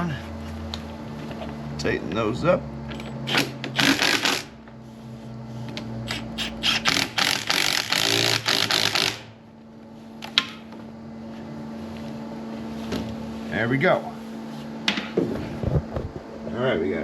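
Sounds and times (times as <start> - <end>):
ratchet clicking and scraping: 3.3 - 4.5, 6.1 - 9.3.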